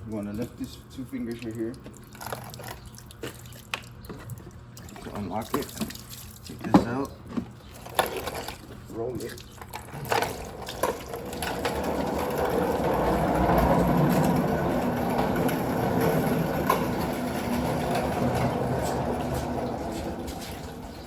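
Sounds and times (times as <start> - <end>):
vacuum rolling on casters: 9.9 - 21.0.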